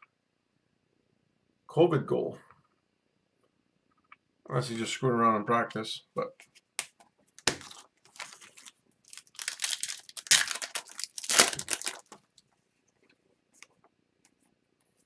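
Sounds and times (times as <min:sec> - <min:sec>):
foil wrapper crinkling and tearing: 0:07.4 - 0:12.4.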